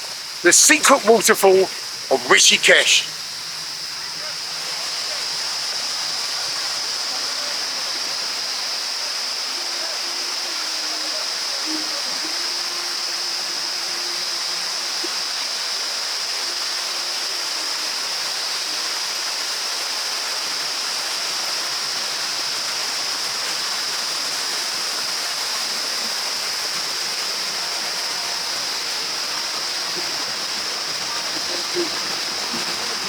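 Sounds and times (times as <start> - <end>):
waterfall and stream rushing: 0.0 - 3.1.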